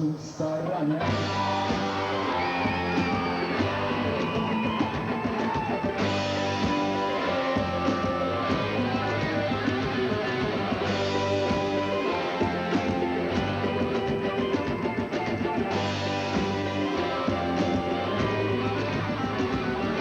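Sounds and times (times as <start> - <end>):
rock band playing live: 0.9 - 20.0.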